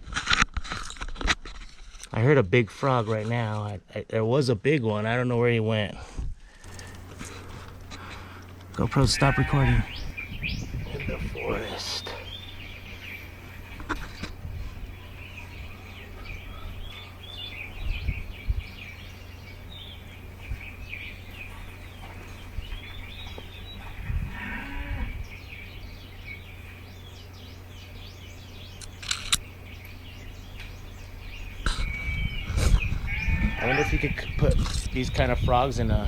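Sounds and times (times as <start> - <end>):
small birds chirping: 6.5 - 36.0
goat bleating: 8.8 - 10.0, 23.8 - 25.2, 33.0 - 34.2
sharp click: 28.8 - 29.4.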